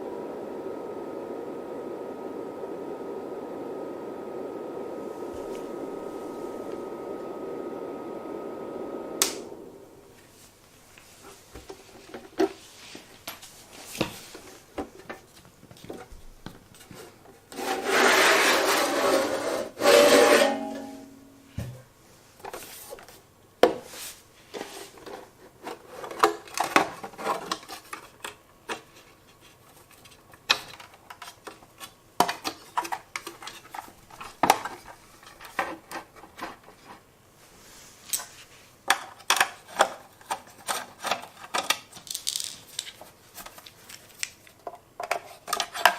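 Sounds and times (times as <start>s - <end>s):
loud scraping rustle: 17.6s - 20.9s
small parts clicking and tapping: 38.9s - 43.0s.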